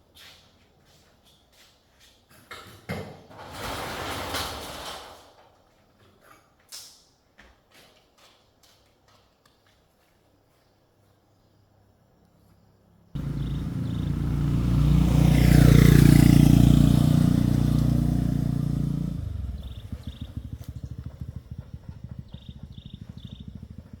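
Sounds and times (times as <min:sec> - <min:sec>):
vehicle engine starting and idling: 0:13.2 - 0:24.0.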